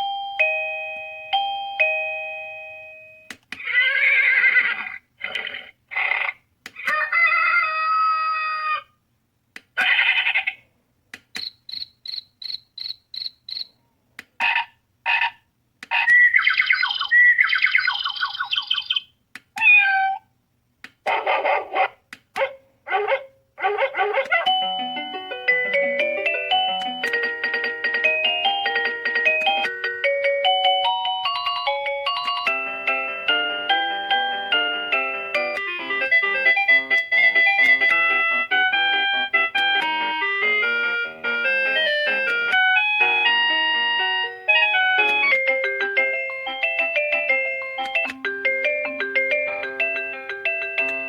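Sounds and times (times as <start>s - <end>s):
doorbell ding-dong chime: 0.0s - 3.3s, 24.5s - 35.2s
bird-like chirps: 16.0s - 19.2s
doorbell ringtone clips: 24.5s - 35.7s.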